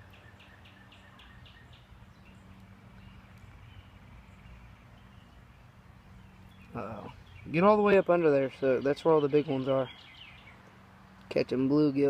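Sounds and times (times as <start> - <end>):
bird chirping: 0.0 - 10.8.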